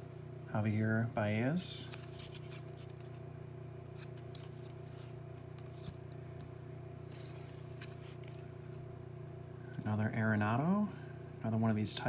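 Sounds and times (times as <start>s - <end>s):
cards ticking and scraping: 1.8s - 3.3s, 3.9s - 8.9s.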